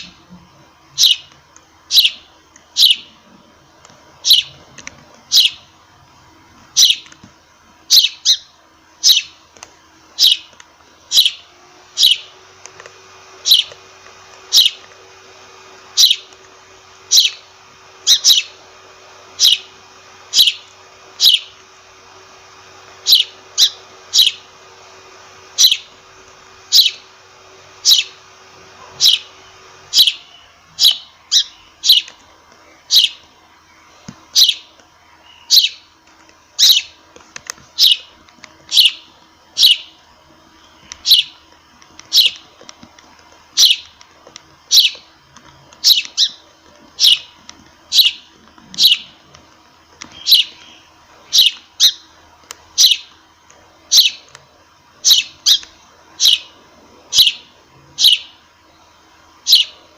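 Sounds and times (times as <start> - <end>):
sparrow chirping: 1.0 - 1.3, 1.9 - 3.2, 4.2 - 4.6, 5.3 - 5.7, 6.7 - 7.2, 7.9 - 9.4, 10.1 - 10.5, 11.1 - 11.4, 12.0 - 12.4, 13.4 - 13.8, 14.5 - 14.8, 15.9 - 16.4, 17.1 - 18.6, 19.3 - 21.6, 23.0 - 24.5, 25.5 - 26.0, 26.7 - 27.1, 27.7 - 28.2, 28.9 - 32.2, 32.8 - 33.3, 34.3 - 35.9, 36.6 - 37.0, 37.8 - 40.0, 40.6 - 41.4, 42.0 - 42.5, 43.6 - 44.0, 44.7 - 45.1, 45.8 - 46.4, 47.0 - 49.2, 50.0 - 52.1, 52.7 - 53.2, 53.9 - 54.3, 55.0 - 58.4, 59.4 - 59.9.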